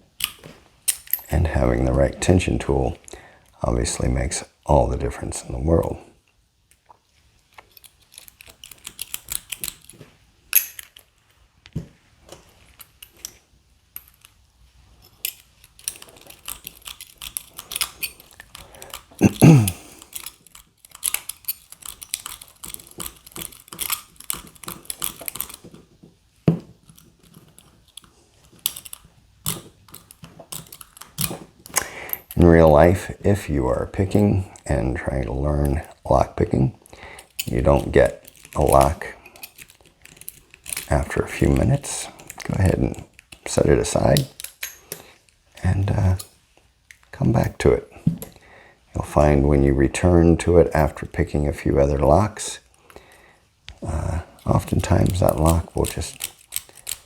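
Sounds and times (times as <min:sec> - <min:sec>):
lock pick scratchy metallic clicking: 0:00.2 - 0:01.3, 0:07.5 - 0:11.1, 0:15.0 - 0:25.8, 0:26.8 - 0:32.4, 0:37.2 - 0:47.6, 0:54.4 - 0:57.0.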